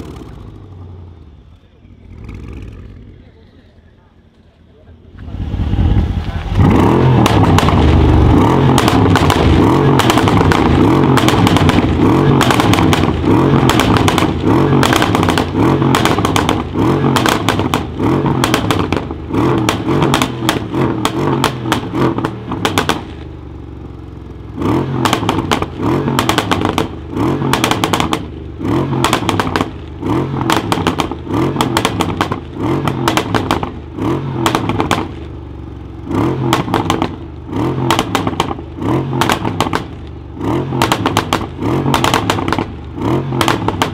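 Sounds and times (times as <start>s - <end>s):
car engine revving: 0.0s - 3.7s, 5.1s - 23.2s, 24.5s - 43.9s
exhaust popping and crackling: 5.1s - 43.9s.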